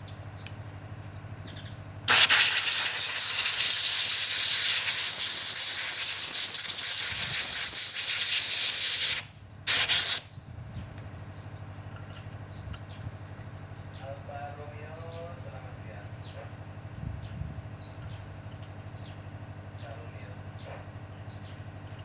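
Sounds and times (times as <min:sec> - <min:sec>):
pressurised gas jet hissing: 0:02.1 - 0:10.3.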